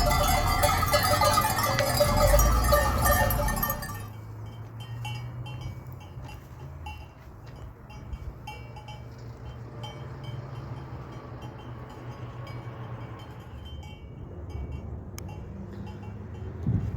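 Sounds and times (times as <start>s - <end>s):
livestock bell clanking: 0.0s - 16.6s.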